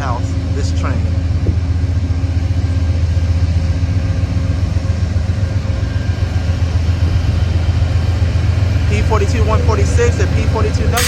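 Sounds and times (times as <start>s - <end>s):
passenger train rolling past: 0.0s - 11.0s.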